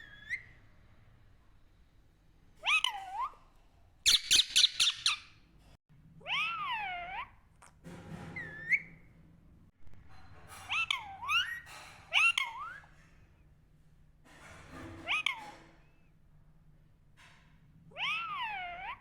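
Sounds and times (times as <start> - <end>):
parrot squawking: 0.0 - 0.6, 2.6 - 3.5, 4.1 - 5.4, 6.2 - 7.4, 10.5 - 13.0, 15.0 - 15.5, 17.9 - 19.0.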